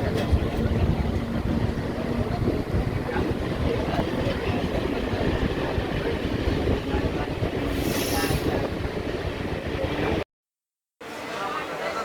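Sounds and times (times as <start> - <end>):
train wheels rumbling and rattling: 0.0 - 10.2
brief hiss: 7.8 - 8.5.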